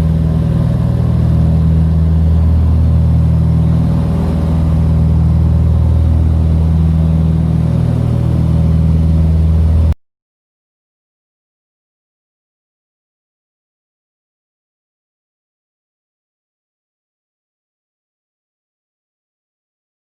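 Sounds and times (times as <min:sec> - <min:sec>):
aircraft engine drone: 0:00.0 - 0:10.0.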